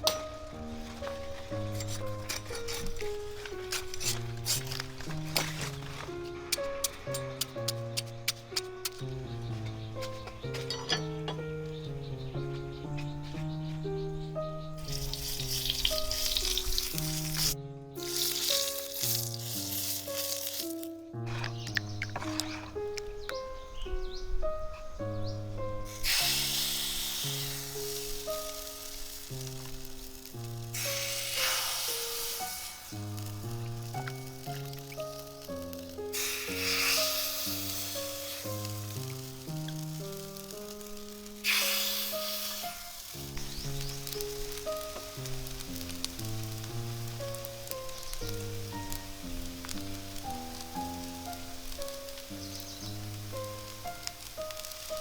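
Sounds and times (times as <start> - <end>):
food sizzling as it fries: 0.0 - 10.2, 14.7 - 23.5, 25.3 - 55.0
instrumental background music: 0.0 - 55.0.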